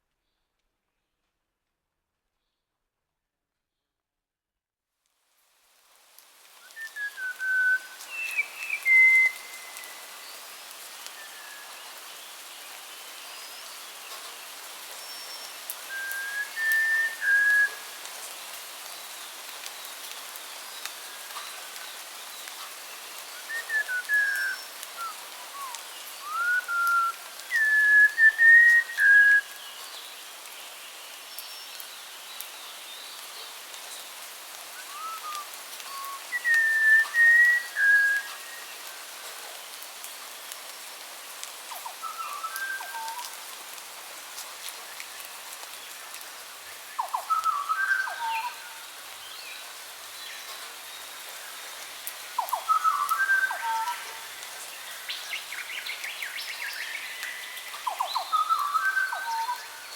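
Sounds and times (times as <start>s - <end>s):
steady hiss: 5.2s - 59.9s
songbird whistling: 15.9s - 17.8s, 23.4s - 29.6s, 34.8s - 38.6s, 41.7s - 43.2s, 47.0s - 48.7s, 52.4s - 54.0s, 56.1s - 59.8s.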